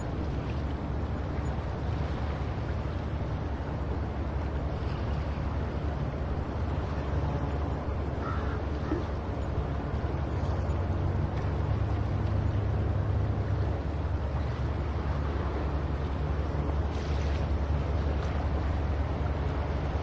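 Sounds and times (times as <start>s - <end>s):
ocean surf: 0.0s - 20.0s
seagull call: 8.2s - 9.1s.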